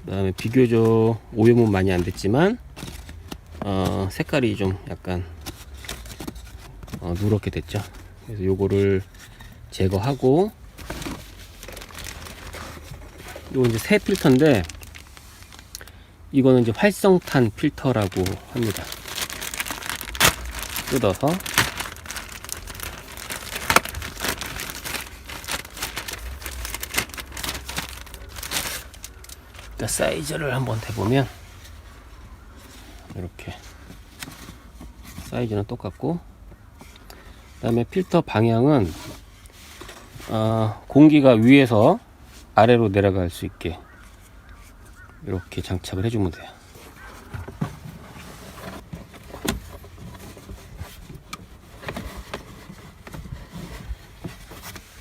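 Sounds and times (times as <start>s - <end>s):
filter rubbing and scraping in housing: 5.3s - 15.7s, 17.0s - 31.9s, 46.6s - 55.0s
plastic wrapping crinkling: 5.6s - 31.4s.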